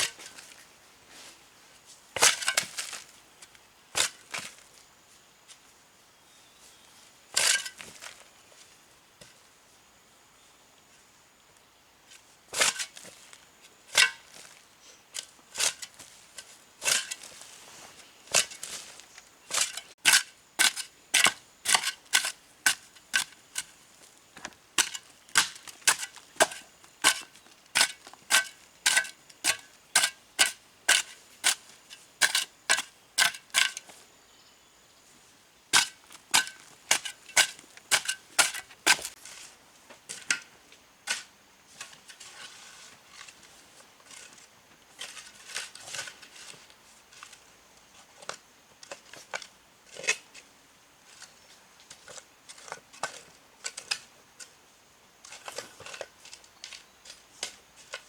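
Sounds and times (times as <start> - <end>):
hand tool striking hard material: 19.5 - 23.7, 24.4 - 33.9, 35.8 - 39.2.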